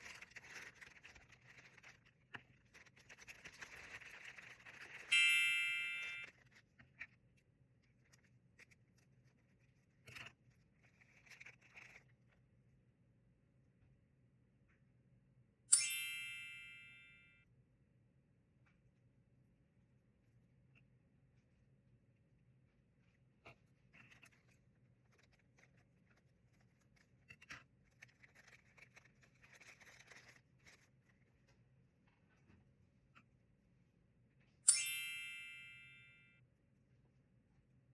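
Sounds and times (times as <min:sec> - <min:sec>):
package clicks and rustles: 0:00.0 - 0:05.2, 0:10.1 - 0:12.1, 0:24.0 - 0:31.2
bright ringing tone: 0:05.1 - 0:06.4, 0:15.7 - 0:17.4, 0:34.7 - 0:36.4.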